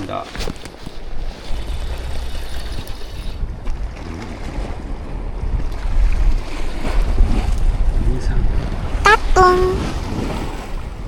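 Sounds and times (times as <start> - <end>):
sea washing around rocks: 0.0 - 11.0
wind buffeting microphone: 0.0 - 11.0.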